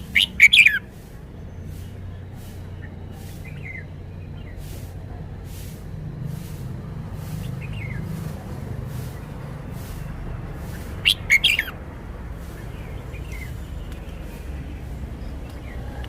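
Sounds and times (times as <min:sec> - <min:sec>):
faint bird chirps: 0:00.0 - 0:05.0, 0:10.6 - 0:11.8, 0:12.4 - 0:16.0
steady low rumble: 0:00.0 - 0:16.0.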